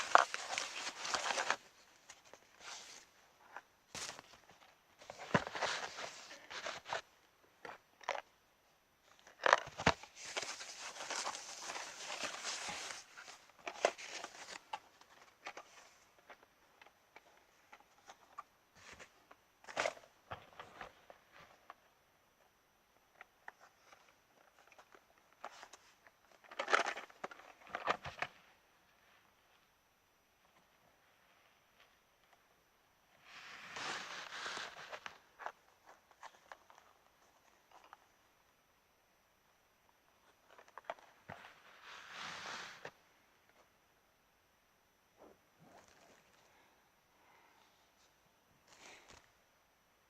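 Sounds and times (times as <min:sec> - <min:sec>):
cardboard and wrapping rustling: 0:00.0 - 0:08.3, 0:09.0 - 0:21.7, 0:23.5 - 0:28.4, 0:33.4 - 0:38.0.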